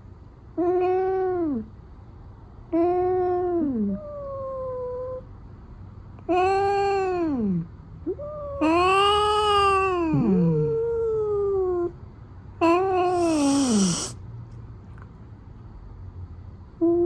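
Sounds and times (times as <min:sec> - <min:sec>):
cat meowing: 0:13.0 - 0:14.2.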